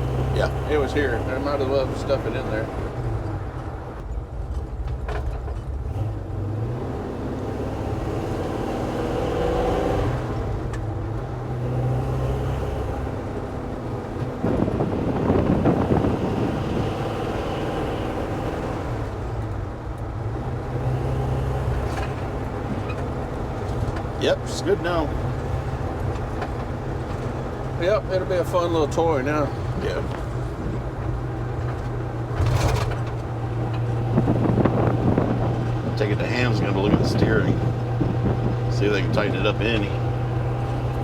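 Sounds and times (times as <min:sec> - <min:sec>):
engine drone inside truck cab: 0:00.0 - 0:41.0
road noise: 0:00.0 - 0:41.0.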